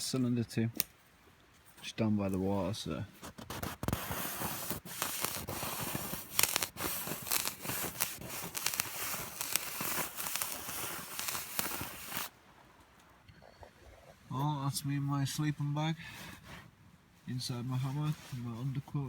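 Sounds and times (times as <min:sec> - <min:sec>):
fire crackling and popping: 0:03.2 - 0:12.4.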